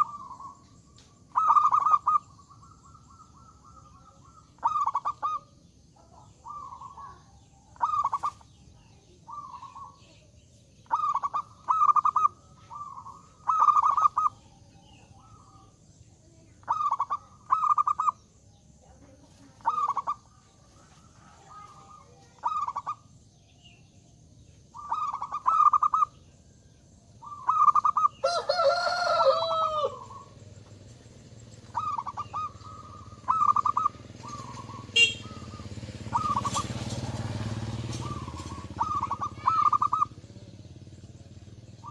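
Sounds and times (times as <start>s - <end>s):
bird's long arching call: 0.0s - 18.8s, 19.5s - 41.9s
dove cooing: 0.0s - 23.8s, 24.6s - 41.9s.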